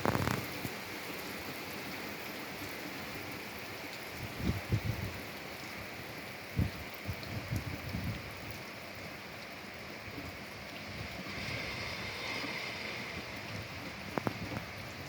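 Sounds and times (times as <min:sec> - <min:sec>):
heavy raindrops thudding: 0:00.0 - 0:00.7, 0:11.2 - 0:15.0
steady rain hiss: 0:00.0 - 0:15.0.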